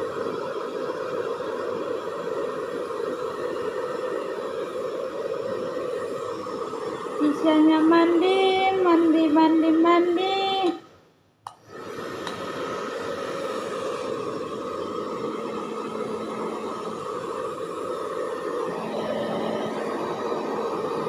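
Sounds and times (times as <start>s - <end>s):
steady rushing noise with hum: 12.4s - 21.0s.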